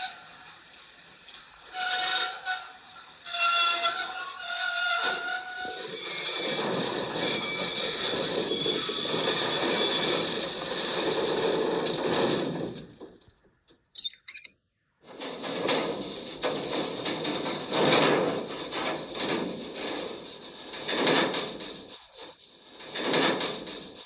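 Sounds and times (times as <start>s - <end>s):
short falling squeal: 1.7s - 10.5s
train wheels rumbling on rails: 3.7s - 13.3s, 15.1s - 24.0s.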